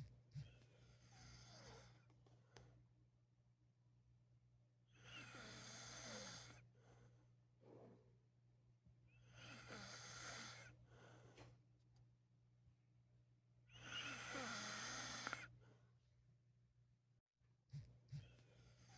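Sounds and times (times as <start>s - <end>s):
man snoring: 13.9s - 15.5s.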